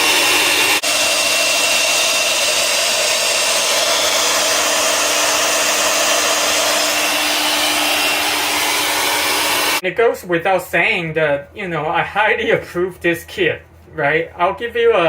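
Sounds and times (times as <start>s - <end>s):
air blower whining: 0.0s - 9.8s.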